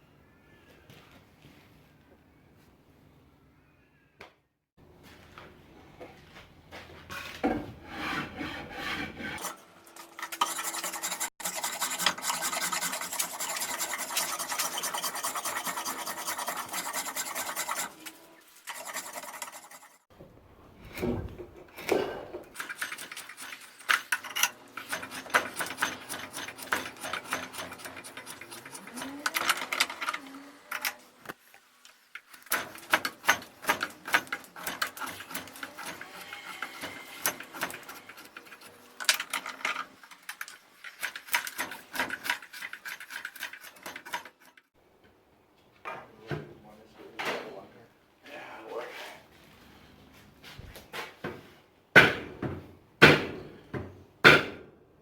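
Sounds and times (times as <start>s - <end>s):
hand tool rasping on steel: 7.8s - 20.0s.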